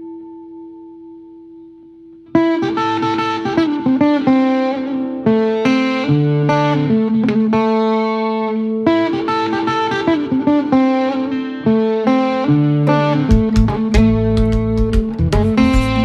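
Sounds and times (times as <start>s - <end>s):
electric guitar chiming notes: 0.0s - 16.0s
bass and drum hits: 13.3s - 16.0s.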